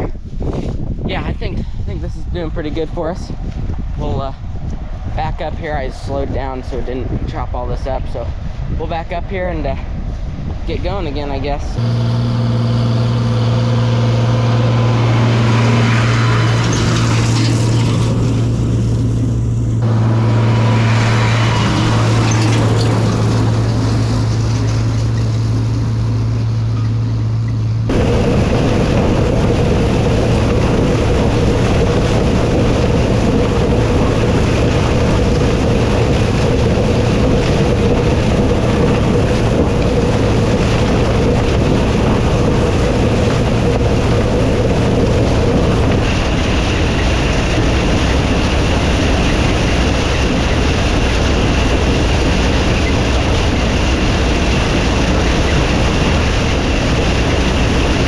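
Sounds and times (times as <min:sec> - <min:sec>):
flail mower whine: 0:11.8 - 0:58.0
tractor engine humming: 0:11.8 - 0:58.0.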